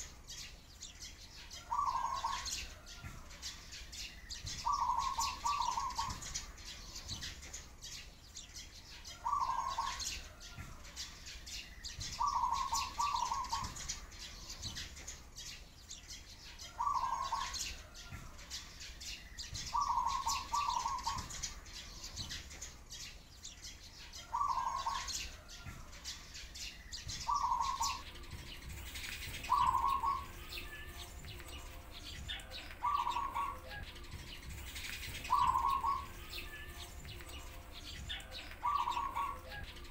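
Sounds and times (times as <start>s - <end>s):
high sparrow chirps: 0.0s - 39.9s
dove cooing: 1.7s - 2.6s, 4.6s - 6.2s, 9.2s - 10.0s, 12.2s - 13.8s, 16.8s - 17.6s, 19.7s - 21.3s, 24.3s - 25.1s, 27.3s - 28.0s, 28.8s - 39.9s.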